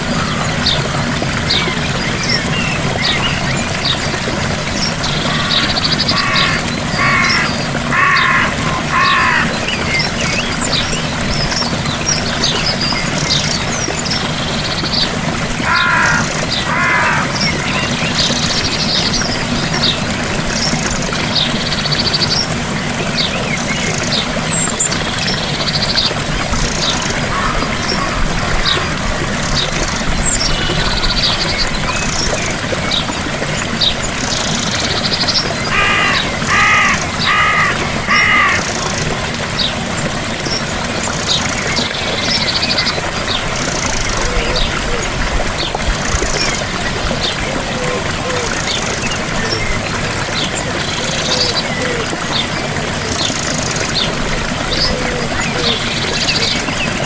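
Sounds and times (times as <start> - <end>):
waterfall running: 0.0 - 57.0
harsh bird call: 5.2 - 9.7, 15.6 - 17.7, 35.7 - 38.8.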